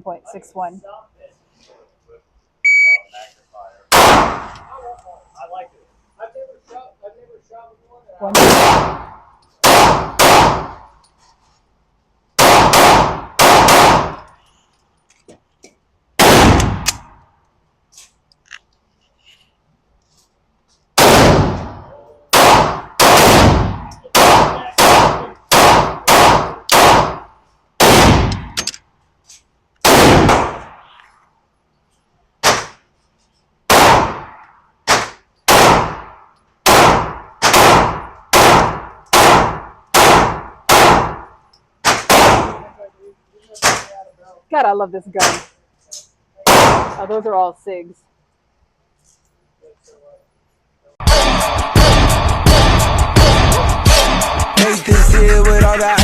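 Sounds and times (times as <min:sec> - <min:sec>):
pistol shots: 0:03.9 - 0:04.6, 0:08.3 - 0:10.9, 0:12.4 - 0:14.3, 0:16.2 - 0:17.2, 0:21.0 - 0:28.7, 0:29.8 - 0:30.8, 0:32.4 - 0:32.8, 0:33.7 - 0:42.7, 0:46.4 - 0:47.0.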